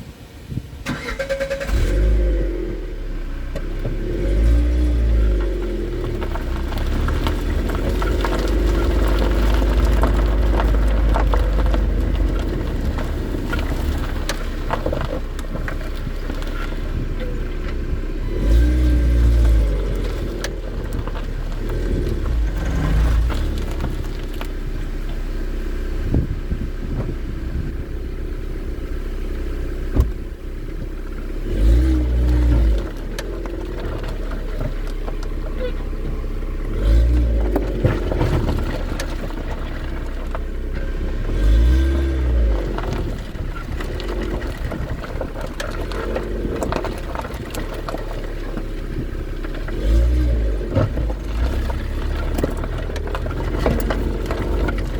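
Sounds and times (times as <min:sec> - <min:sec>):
car running and road noise: 0:00.0 - 0:54.9
low rumble: 0:01.9 - 0:54.9
suspension knocks: 0:29.9 - 0:31.0.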